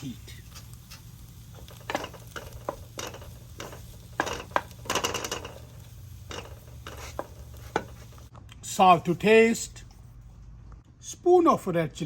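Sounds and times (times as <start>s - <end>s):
metal spoon scraping pan: 0.5s - 8.2s.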